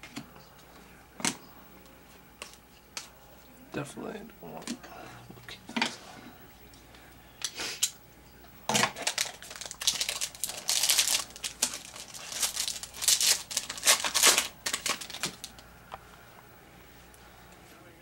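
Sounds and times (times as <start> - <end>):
wrapper tearing and crinkling: 8.8 - 15.6.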